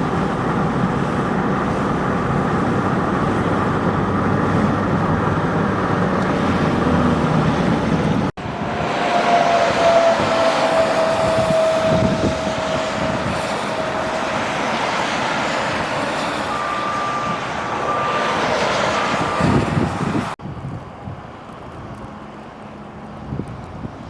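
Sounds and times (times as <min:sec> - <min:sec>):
high-pitched whine: 0:00.0 - 0:20.2
road traffic passing: 0:00.0 - 0:24.0.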